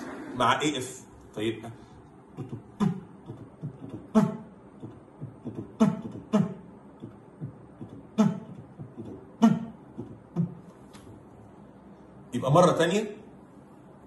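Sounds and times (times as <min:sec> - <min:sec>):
mouth-imitated heartbeat: 0:02.4 - 0:10.6.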